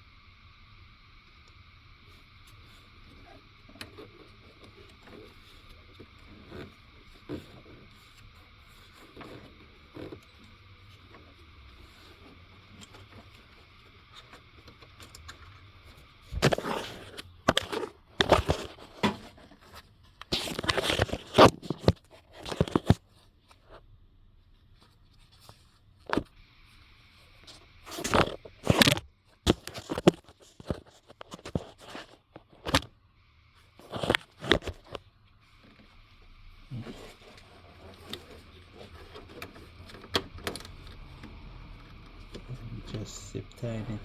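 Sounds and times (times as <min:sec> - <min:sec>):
hands scraping wiring harness: 0:03.8 - 0:23.0, 0:27.7 - 0:32.9, 0:36.7 - 0:44.0.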